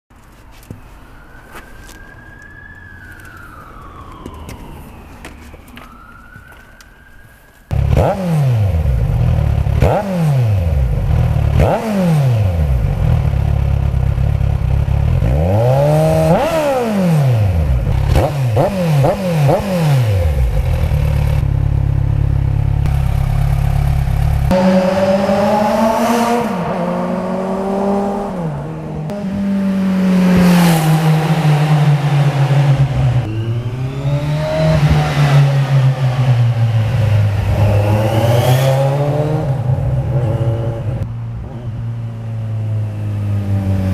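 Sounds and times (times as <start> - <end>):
motorcycle engine revving: 7.7 - 43.9.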